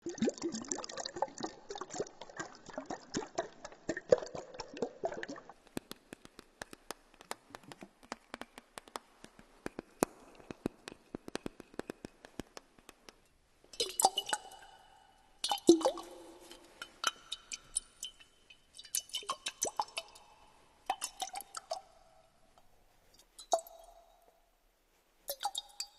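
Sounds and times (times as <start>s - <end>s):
water splashing and trickling: 0.0s - 5.6s, 13.8s - 21.9s
sharp water drips: 0.0s - 8.6s, 13.7s - 22.3s, 23.4s - 24.2s, 25.3s - 25.9s.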